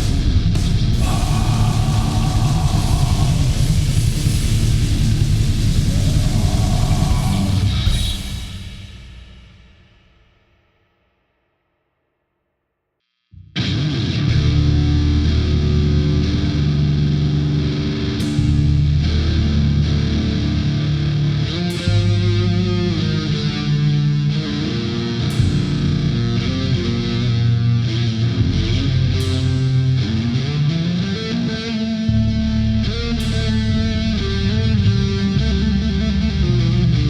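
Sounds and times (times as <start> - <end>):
distorted electric guitar riffing: 0.0 - 9.2.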